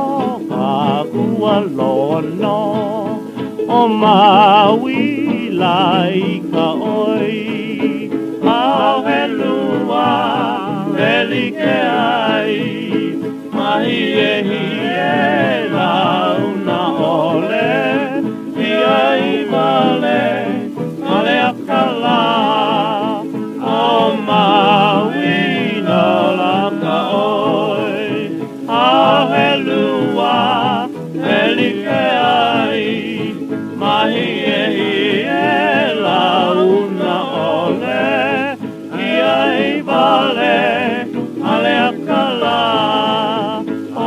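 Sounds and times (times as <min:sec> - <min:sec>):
hawaiian band music on old record: 0:00.0 - 0:44.0.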